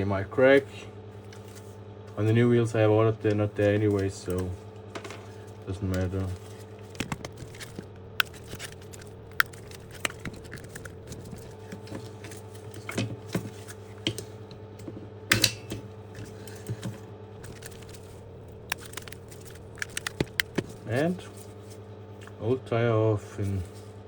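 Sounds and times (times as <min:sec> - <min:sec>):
screwdriver prying clicks and snaps: 0:07.0 - 0:11.5.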